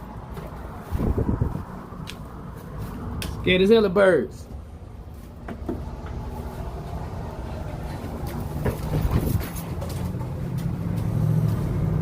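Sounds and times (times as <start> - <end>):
low engine-like drone: 5.7 - 12.0.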